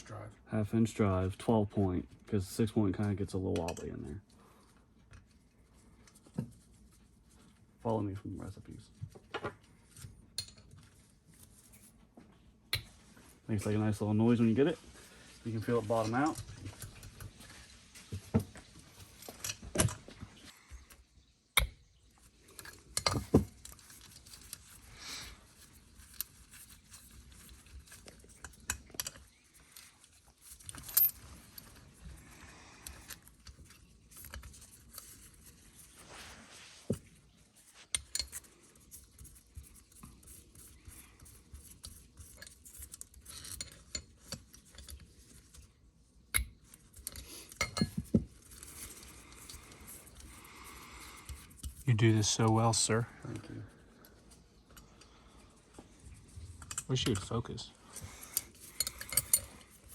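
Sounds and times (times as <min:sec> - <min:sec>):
metallic clicks and clinks: 0:25.5 - 0:32.0, 0:46.3 - 0:52.5, 0:56.5 - 0:59.9.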